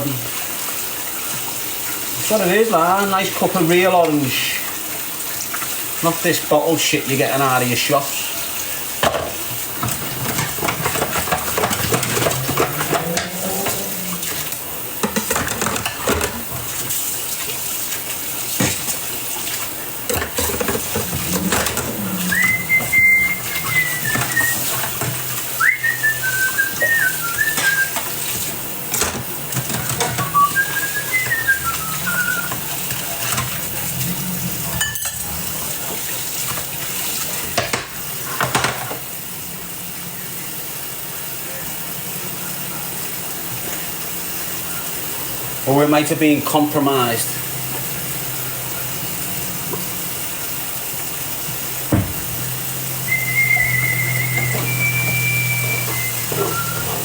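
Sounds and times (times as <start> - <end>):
dishes and cutlery clattering: 9.0 - 17.0, 18.5 - 25.5, 26.9 - 31.7, 32.4 - 39.0
person whistling a tune: 22.2 - 24.7, 25.6 - 28.0, 30.2 - 32.6, 53.0 - 57.0.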